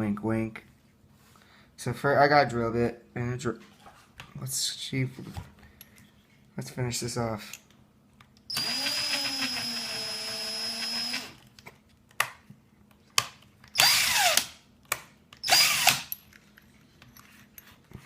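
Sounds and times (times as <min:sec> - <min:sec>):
drill clicks: 0:08.5 - 0:11.4, 0:15.4 - 0:16.2
electric drill whining: 0:08.5 - 0:11.4, 0:13.8 - 0:14.5, 0:15.4 - 0:16.1.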